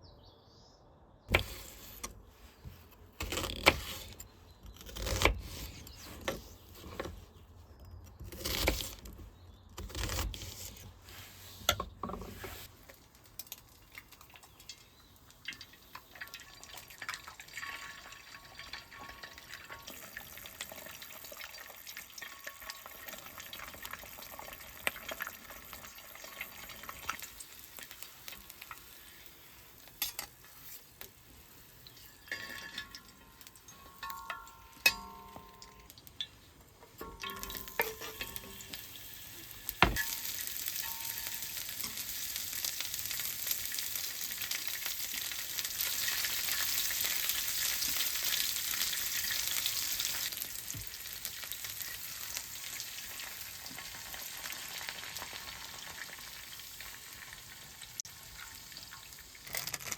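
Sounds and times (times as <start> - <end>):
utensils clinking and knocking: 37.0 - 38.7
food sizzling in a pan: 37.0 - 59.5.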